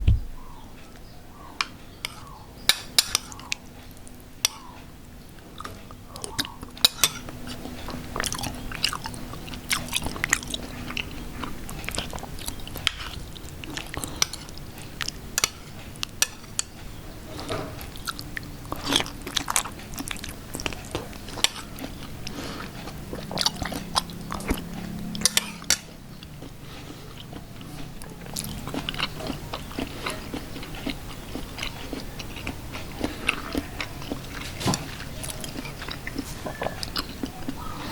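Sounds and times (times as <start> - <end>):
slurping soup: 17.3 - 37.9.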